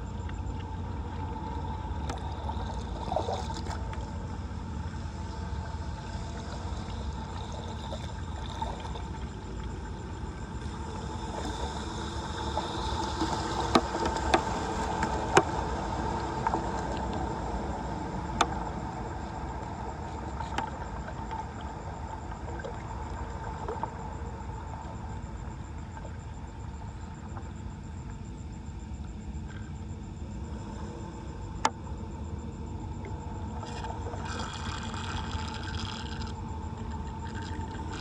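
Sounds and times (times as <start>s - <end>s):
floodwater rushing down drain: 0.1s - 24.1s, 33.6s - 38.0s.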